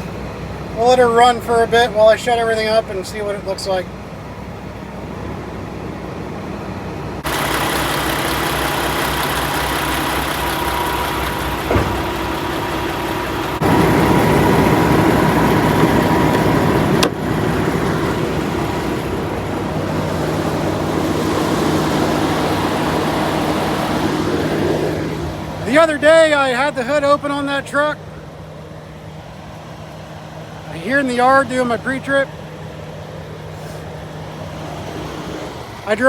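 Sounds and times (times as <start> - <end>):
diesel truck engine idling: 0.0 - 36.0
sharp knock: 11.7 - 12.2.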